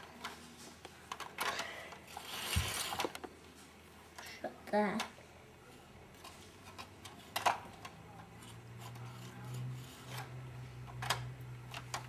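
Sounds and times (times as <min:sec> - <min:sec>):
plastic building bricks clicking: 0:01.1 - 0:03.3, 0:06.2 - 0:10.3, 0:10.9 - 0:12.0.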